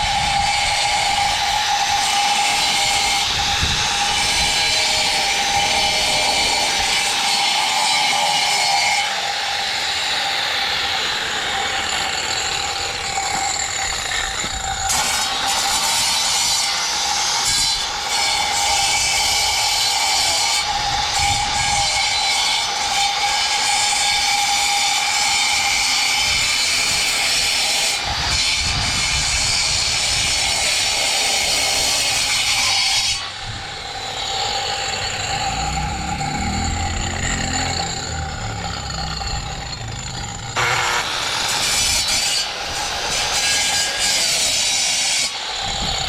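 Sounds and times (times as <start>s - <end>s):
low shifting rumble: 34.9s - 40.6s.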